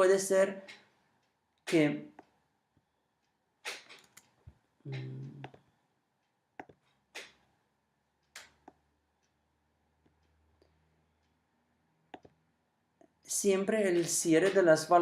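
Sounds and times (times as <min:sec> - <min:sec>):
sharp clicks: 0:03.2 - 0:04.5, 0:06.6 - 0:07.5, 0:08.2 - 0:08.8
low voiced sound: 0:04.9 - 0:05.5.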